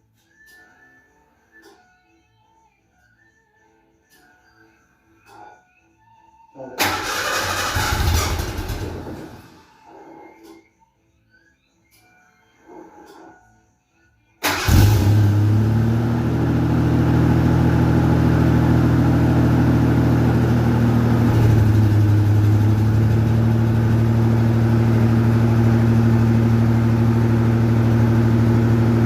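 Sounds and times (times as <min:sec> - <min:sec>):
pickup engine idling: 0:14.7 - 0:29.0.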